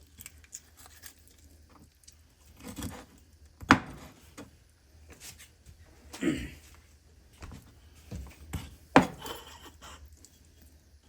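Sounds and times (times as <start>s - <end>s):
knife chop: 3.7s - 4.2s, 9.0s - 9.5s
knife cutting and scraping: 8.6s - 10.0s.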